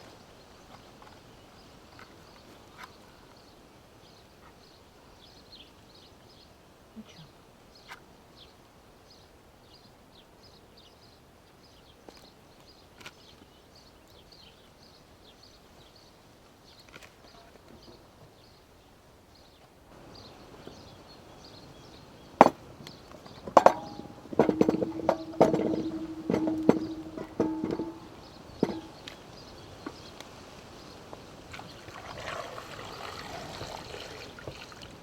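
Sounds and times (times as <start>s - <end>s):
cookware and utensils clattering: 23.5s - 29.0s
ringing metallic tone: 23.6s - 29.0s.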